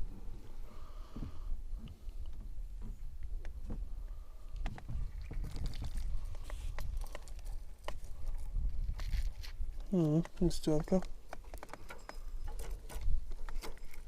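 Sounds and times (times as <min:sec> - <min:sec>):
knocks and clicks in a boat: 0:01.7 - 0:03.9.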